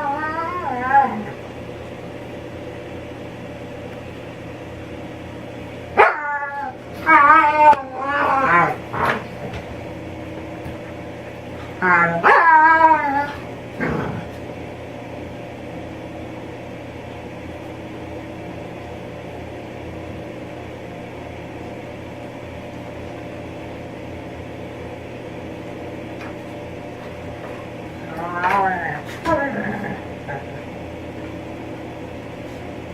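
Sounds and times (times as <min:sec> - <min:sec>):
pet warbling: 0:00.0 - 0:01.5, 0:06.0 - 0:09.3, 0:11.7 - 0:14.3, 0:28.0 - 0:30.8
steady low hum: 0:00.0 - 0:32.9.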